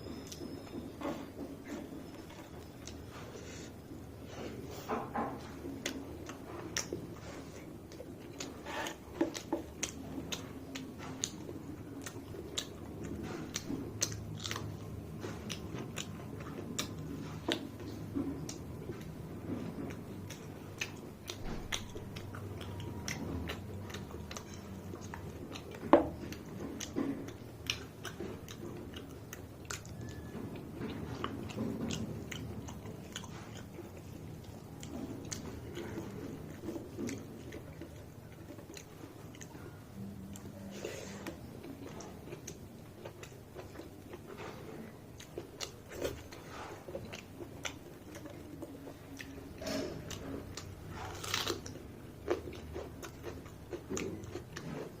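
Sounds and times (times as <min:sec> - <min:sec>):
person chewing food: 0:00.0 - 0:55.0
crunch: 0:41.6 - 0:55.0.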